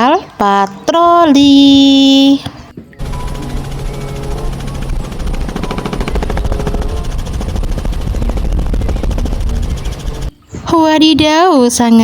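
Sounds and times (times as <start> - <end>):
motorboat engine running: 3.0 - 10.4.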